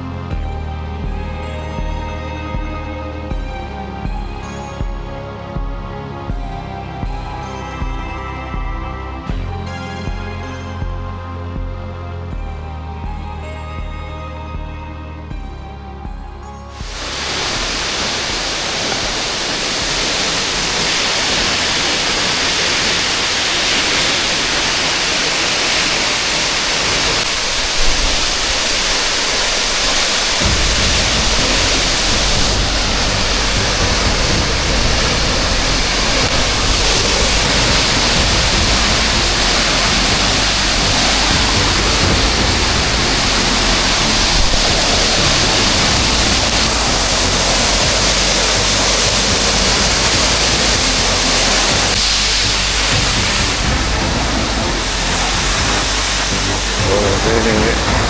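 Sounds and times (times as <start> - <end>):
waterfall rushing: 16.8 - 58.0.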